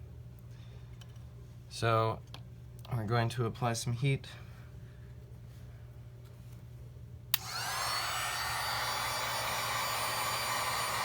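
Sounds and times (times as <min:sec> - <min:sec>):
heat gun switch click: 0:07.3 - 0:08.0
heat gun fan whine: 0:07.3 - 0:11.0.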